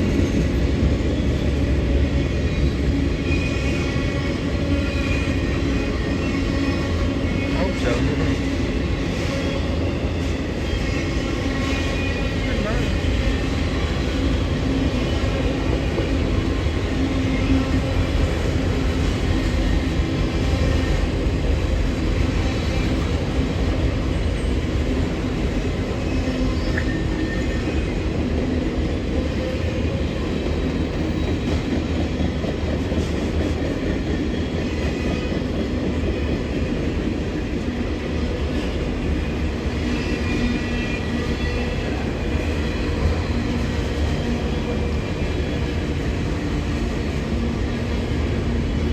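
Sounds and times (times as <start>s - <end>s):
train rumbling and rattling: 0.0s - 48.9s.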